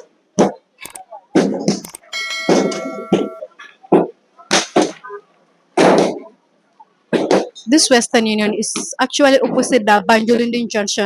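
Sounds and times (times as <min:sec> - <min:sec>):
voices: 0:00.4 - 0:11.0
metal clang ringing: 0:02.2 - 0:03.4.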